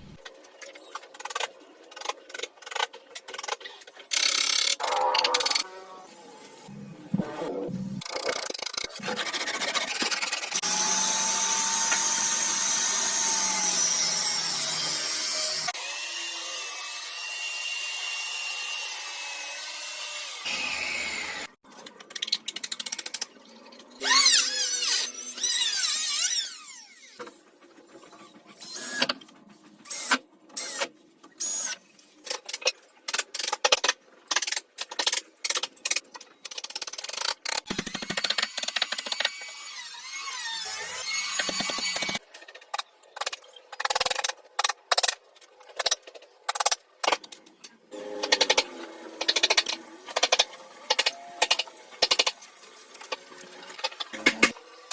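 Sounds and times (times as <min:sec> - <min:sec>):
power tool starting and stopping: 0:10.5 - 0:16.4
power tool whining: 0:10.6 - 0:15.7.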